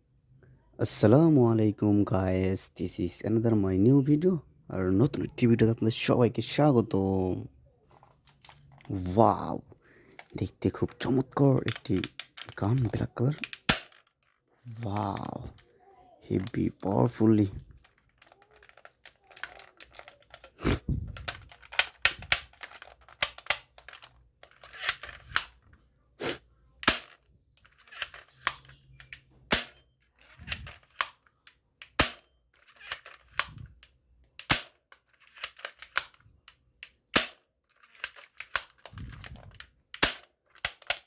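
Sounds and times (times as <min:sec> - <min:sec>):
rattling handling noise: 0:07.9 - 0:15.6, 0:16.3 - 0:25.7
toy gun sharp snaps: 0:13.4 - 0:14.0, 0:37.2 - 0:37.4, 0:40.0 - 0:41.0.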